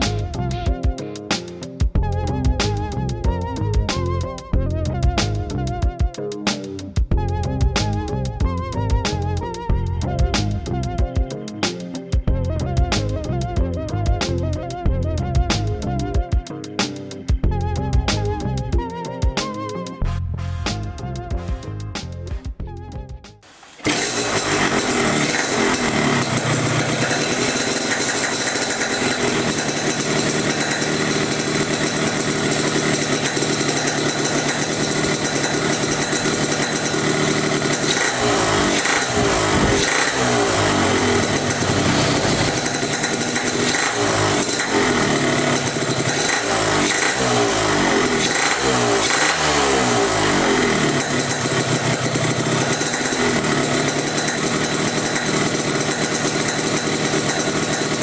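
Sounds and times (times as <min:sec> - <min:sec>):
two-stroke engine idling and revving: 0:00.0 - 0:00.8, 0:01.4 - 0:05.9, 0:07.1 - 0:19.6, 0:23.4 - 0:58.0.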